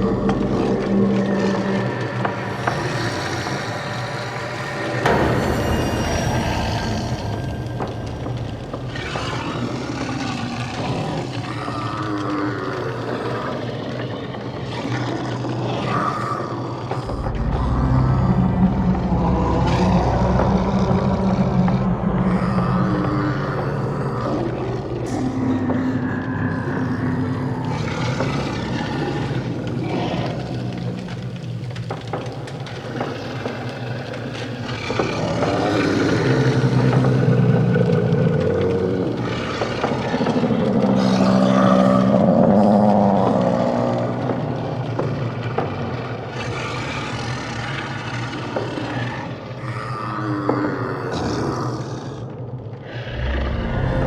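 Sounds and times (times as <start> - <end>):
low hum: 0.0 - 10.8, 16.9 - 40.0, 52.8 - 54.0
engine-like drone: 0.0 - 11.6, 16.8 - 44.3, 52.9 - 54.0.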